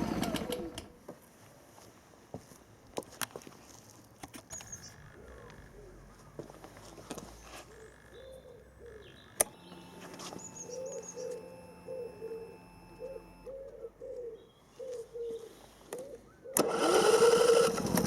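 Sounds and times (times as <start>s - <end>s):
bird cooing: 4.7s - 6.5s, 7.5s - 9.8s, 10.4s - 16.6s
faint steady tone: 9.4s - 14.8s.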